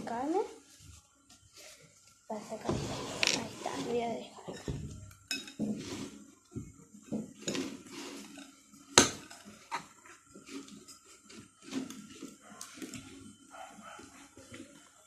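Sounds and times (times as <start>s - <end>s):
spoon clinking against dish: 4.5s - 5.7s
spoon stirring thick slime: 7.2s - 15.0s.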